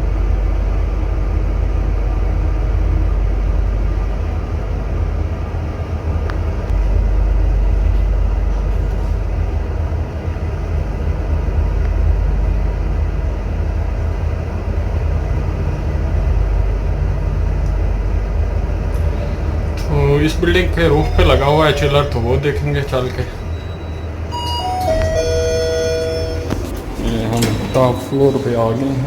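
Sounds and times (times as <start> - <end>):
lift cab rumble and hum: 0.0 - 29.0.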